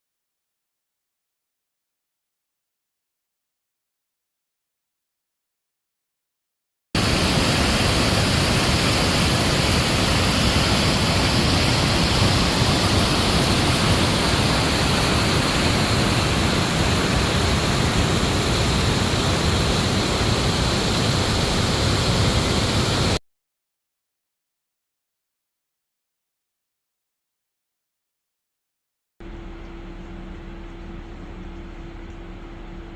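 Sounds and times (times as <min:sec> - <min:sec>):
waterfall rushing: 0:07.0 - 0:23.2.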